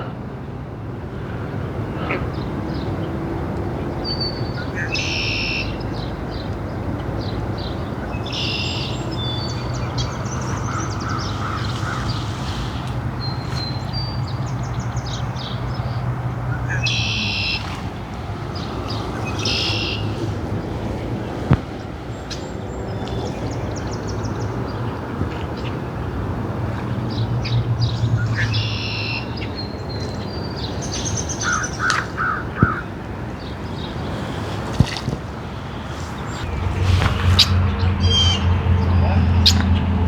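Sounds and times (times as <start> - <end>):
outdoor background noise: 0.0 - 40.0
harsh bird calls: 4.0 - 26.3, 26.9 - 40.0
low hum: 35.4 - 40.0
high bird chirps: 35.7 - 39.8.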